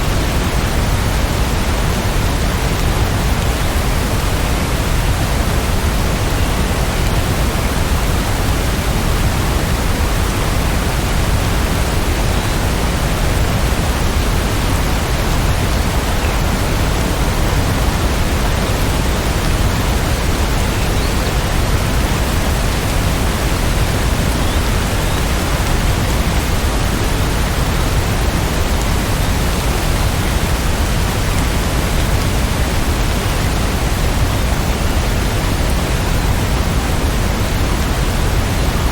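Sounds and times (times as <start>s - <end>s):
heavy rain: 0.0s - 38.9s.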